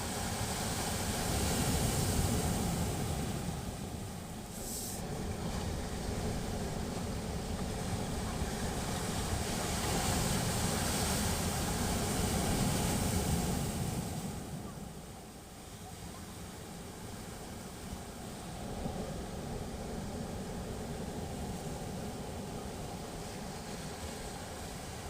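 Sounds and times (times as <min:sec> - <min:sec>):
wind rumble on microphone: 0:00.0 - 0:15.0
sea waves washing on shore: 0:00.0 - 0:25.0.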